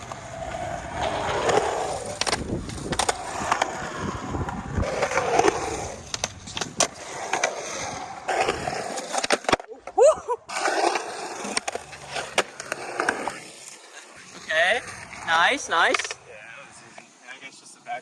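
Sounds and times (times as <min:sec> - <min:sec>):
skateboard clacks: 0:00.0 - 0:09.7, 0:14.2 - 0:16.3
skateboard wheels rumbling: 0:00.0 - 0:17.0.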